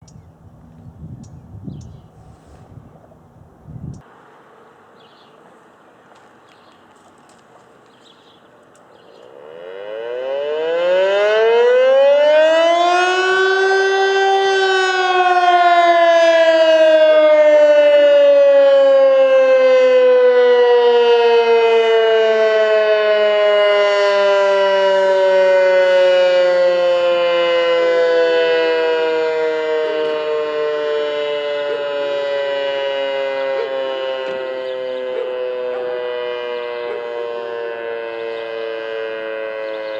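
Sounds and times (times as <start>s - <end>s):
electric motor siren wailing: 9.3s - 39.9s.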